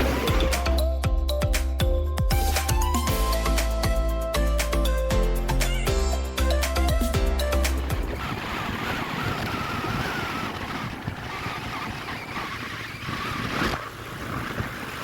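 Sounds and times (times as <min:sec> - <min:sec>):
wind rushing over microphone: 0:07.8 - 0:15.0
motorcycle engine drone: 0:08.0 - 0:15.0.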